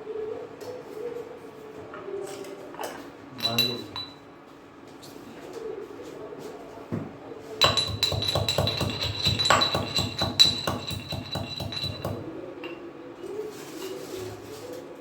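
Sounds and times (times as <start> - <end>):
pigeon cooing: 0.0 - 3.2, 5.1 - 15.0
utensil clinking on metal vessel: 3.4 - 4.2, 7.6 - 12.8.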